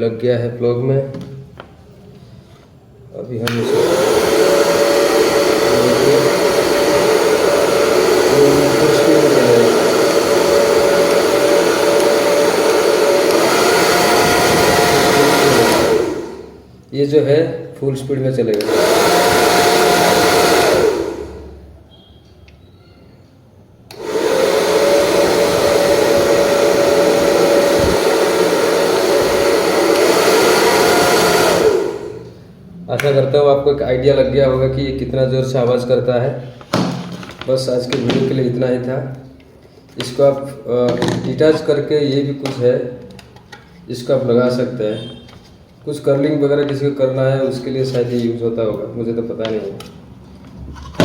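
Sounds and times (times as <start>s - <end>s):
hair dryer switch click: 3.4s - 5.7s, 9.8s - 16.2s, 18.5s - 21.0s, 23.9s - 28.4s, 29.0s - 31.9s
hair dryer running: 3.4s - 16.6s, 18.5s - 21.6s, 23.9s - 32.4s.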